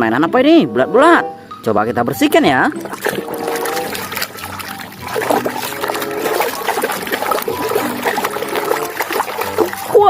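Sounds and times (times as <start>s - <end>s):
music playing: 0.0s - 10.0s
water trickling and splashing: 2.3s - 10.0s.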